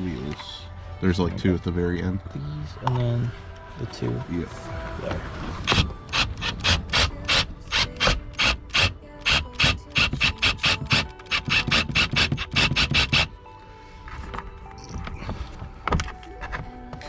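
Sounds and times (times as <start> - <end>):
hand ratchet clicking: 5.7 - 13.3.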